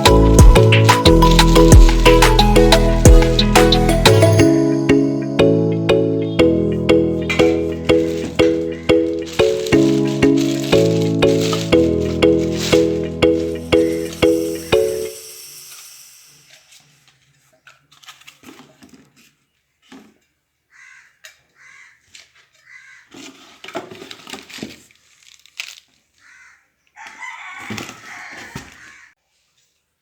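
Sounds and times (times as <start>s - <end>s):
chickens calling: 26.3s - 29.1s.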